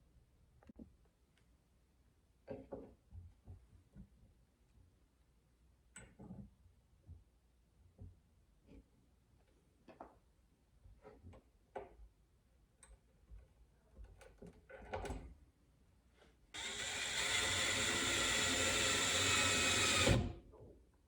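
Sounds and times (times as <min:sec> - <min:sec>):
power drill driving a screw: 0:16.6 - 0:20.4.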